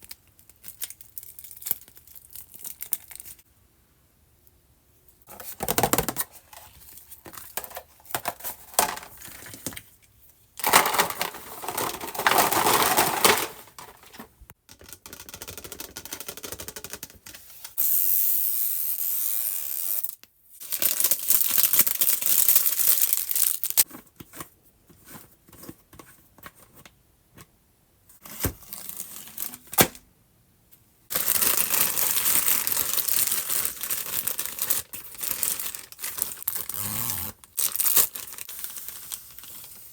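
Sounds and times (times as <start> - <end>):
plastic and paper tearing: 10.6 - 14.3, 31.1 - 39.9.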